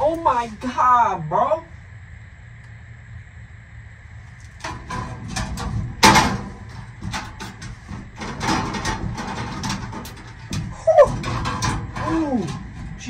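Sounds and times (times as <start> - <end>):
storage unit clattering: 4.5 - 13.0.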